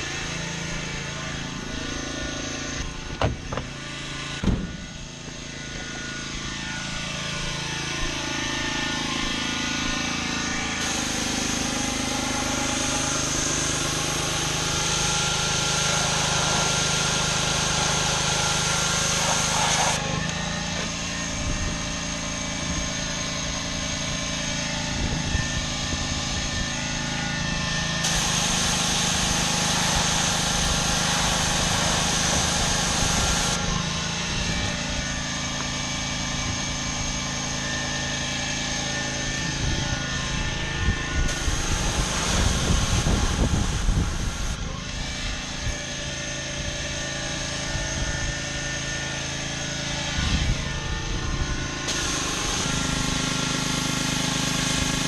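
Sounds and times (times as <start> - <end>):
pressure washer engine running: 0.0 - 55.0
water spraying on concrete: 10.8 - 20.2, 28.0 - 33.7, 41.3 - 44.6, 51.9 - 55.0.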